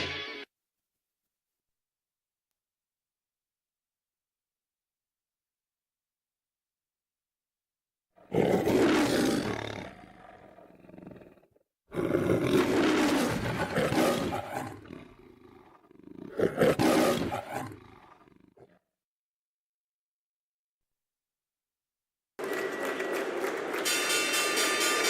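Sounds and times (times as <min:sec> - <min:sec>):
lion roaring: 0:08.2 - 0:18.8.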